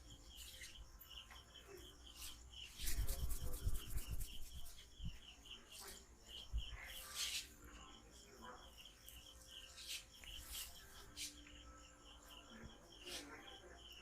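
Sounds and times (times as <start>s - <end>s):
high chirp: 0.0s - 14.0s
hands rubbing and slapping skin: 2.2s - 5.0s, 9.8s - 11.4s.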